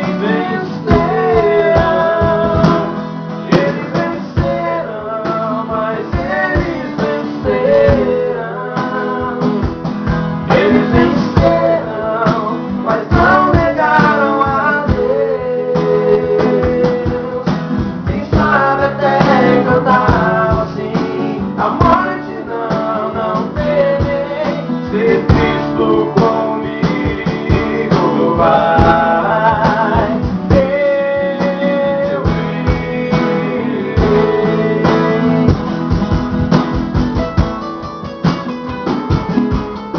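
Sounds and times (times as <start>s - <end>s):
person singing a hymn: 0.0s - 9.8s, 10.5s - 35.6s
plucked and strummed guitar: 0.0s - 39.9s.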